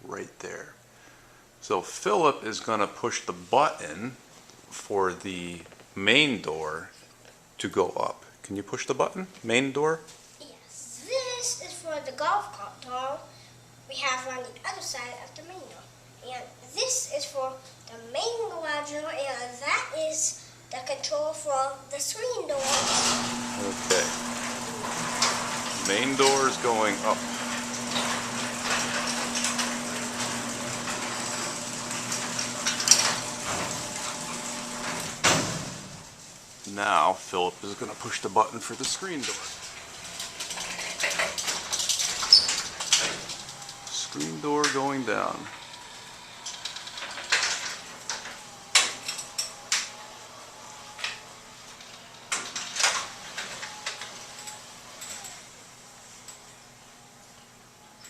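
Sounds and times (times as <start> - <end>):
garage door opener motor hum: 22.4 - 58.0
garage door rattling: 22.5 - 36.6, 37.3 - 57.4.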